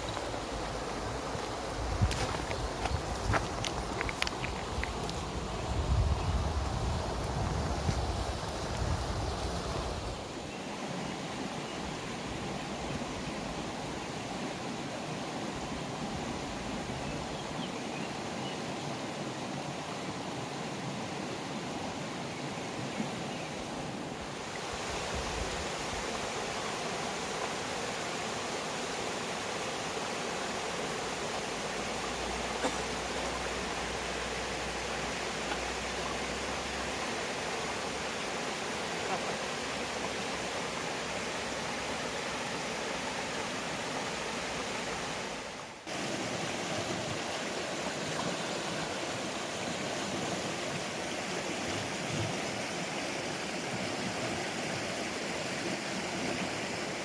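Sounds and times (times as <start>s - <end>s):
stream water rushing: 0.0s - 57.0s.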